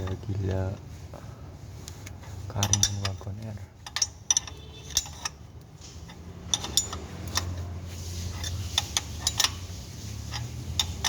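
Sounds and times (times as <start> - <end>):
metallic tool clicks and taps: 2.6 - 7.6, 10.3 - 11.0.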